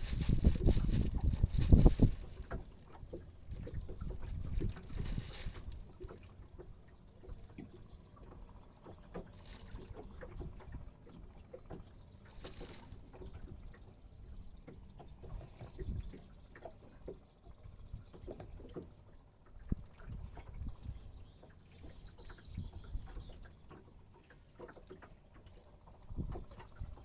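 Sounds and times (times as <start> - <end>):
water and wind rumbling on hull: 0.0 - 27.0
small knocks and clicks: 21.4 - 27.0.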